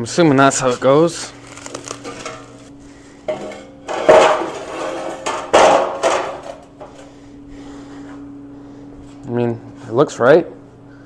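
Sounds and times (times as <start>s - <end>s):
metal parts knocking and clanking: 3.3s - 7.0s.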